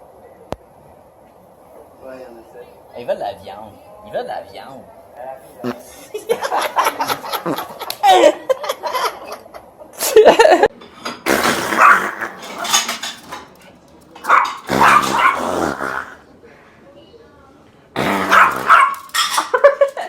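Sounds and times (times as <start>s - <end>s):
dog barking: 11.8s - 12.2s, 14.2s - 15.6s, 18.3s - 19.6s.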